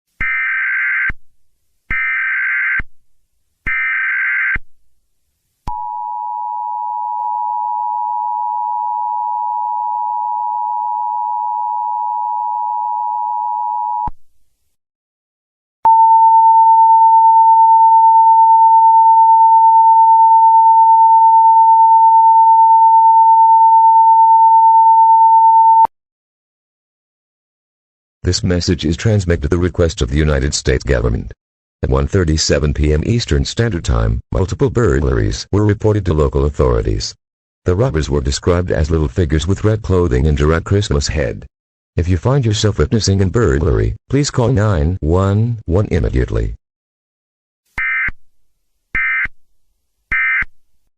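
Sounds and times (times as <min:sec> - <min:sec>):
single steady tone: 0:05.7 - 0:14.2, 0:15.8 - 0:25.9.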